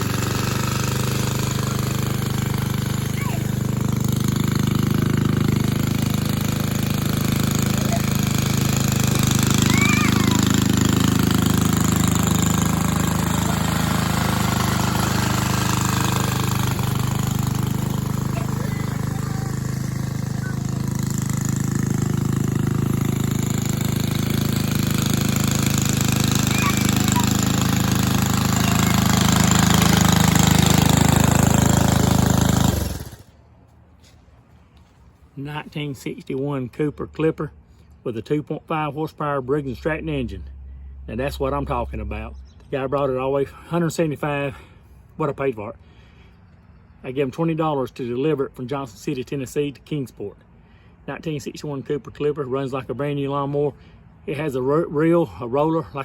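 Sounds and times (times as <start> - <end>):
lawn mower engine running: 0.0 - 35.2.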